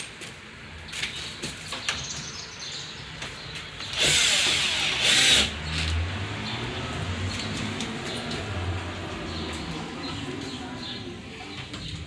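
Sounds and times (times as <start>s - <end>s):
power drill driving screws: 3.9s - 6.0s.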